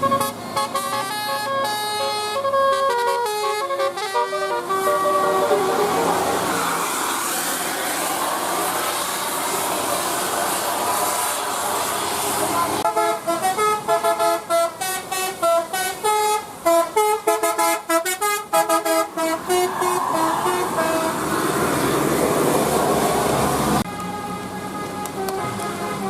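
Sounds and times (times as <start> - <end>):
musical bus horn melody: 0.0 - 7.0, 12.8 - 21.3, 23.6 - 26.0
engine and road noise: 0.0 - 26.0.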